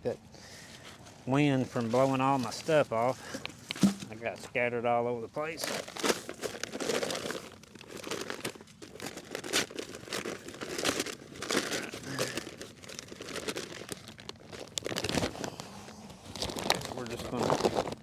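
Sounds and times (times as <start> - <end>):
bag crinkling and rustling: 5.4 - 18.0.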